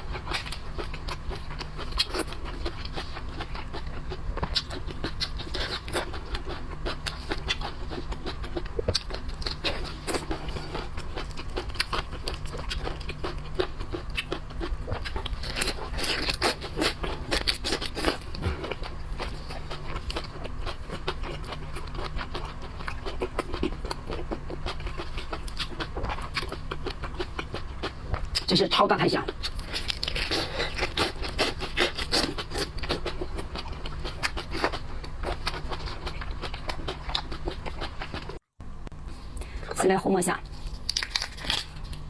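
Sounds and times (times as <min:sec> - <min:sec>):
steady low hum: 0:00.0 - 0:42.0
shellfish shells cracking and crunching: 0:40.6 - 0:42.0.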